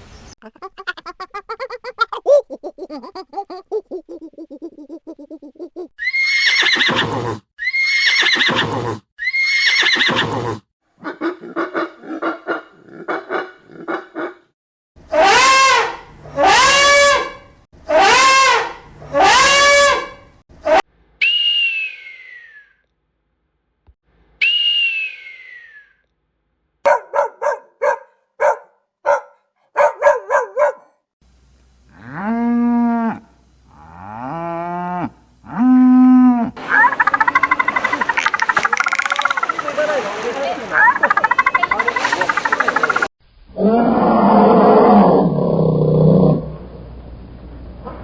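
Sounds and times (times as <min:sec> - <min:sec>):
falling whistle-like calls: 0:21.2 - 0:22.7, 0:24.4 - 0:25.9, 0:36.6 - 0:43.1
arching animal calls: 0:36.6 - 0:43.1
loud animal calls: 0:36.6 - 0:43.1
short stuttering animal calls: 0:36.6 - 0:43.1
low pulsing animal call: 0:36.6 - 0:46.6.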